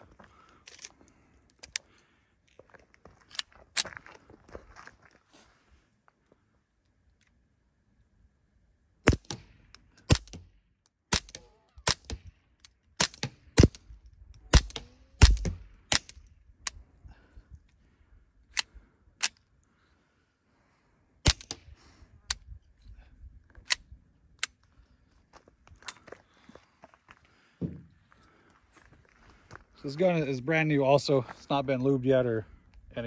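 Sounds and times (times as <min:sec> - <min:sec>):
suppressed pistol shots: 0:09.0 - 0:10.5, 0:11.1 - 0:12.3, 0:13.0 - 0:13.9, 0:14.5 - 0:16.2, 0:21.2 - 0:21.7.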